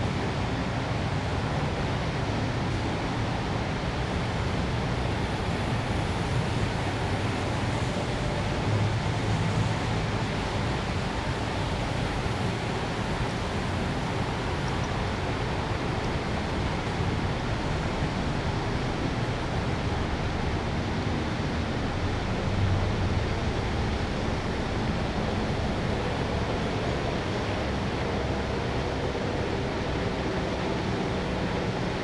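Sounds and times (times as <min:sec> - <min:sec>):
traffic rumble: 0:00.0 - 0:32.0.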